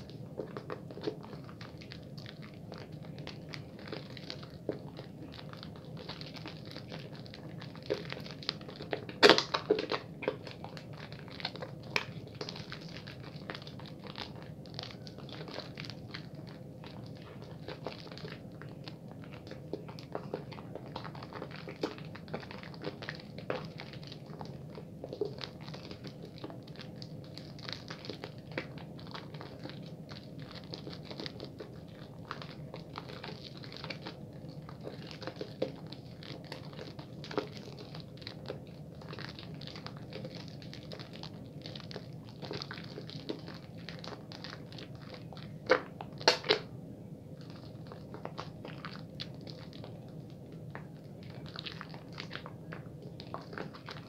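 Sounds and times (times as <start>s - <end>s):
soap lather squishing: 0.0s - 54.0s.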